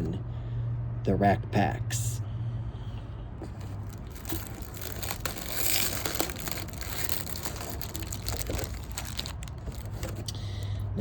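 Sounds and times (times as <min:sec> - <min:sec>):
plastic wrapping crinkling: 0:03.5 - 0:10.7.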